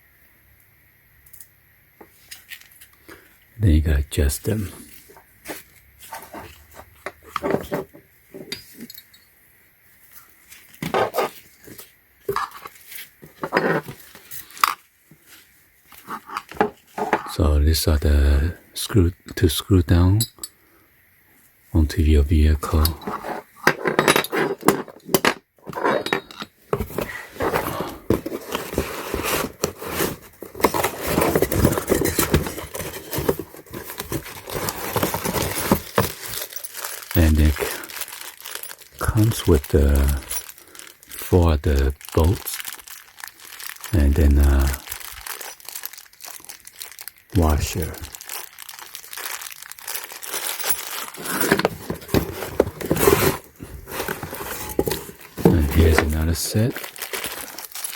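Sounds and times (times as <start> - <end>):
bolts and washers handled: 7.0 - 9.3, 22.7 - 37.6, 50.5 - 56.1
metal bolts clinking: 22.8 - 26.5
plastic packaging crinkling: 26.7 - 57.9.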